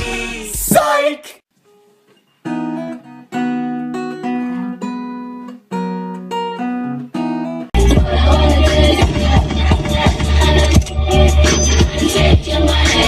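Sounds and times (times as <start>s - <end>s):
acoustic guitar chords: 2.3s - 13.0s
music with heavy bass: 7.8s - 13.0s.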